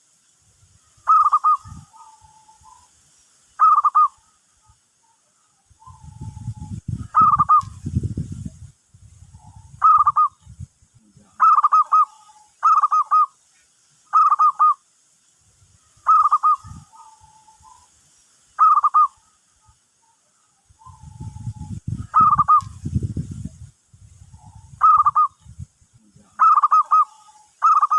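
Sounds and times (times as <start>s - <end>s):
dove cooing: 1.1s - 2.9s, 3.6s - 4.4s, 5.8s - 7.7s, 9.3s - 10.4s, 11.4s - 13.3s, 14.1s - 14.8s, 16.1s - 17.8s, 18.6s - 19.4s, 20.8s - 22.7s, 24.4s - 25.4s, 26.4s - 27.9s.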